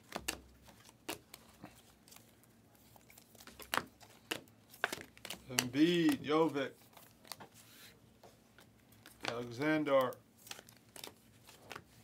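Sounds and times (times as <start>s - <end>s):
trading cards flipped: 2.9s - 7.9s, 9.0s - 12.0s.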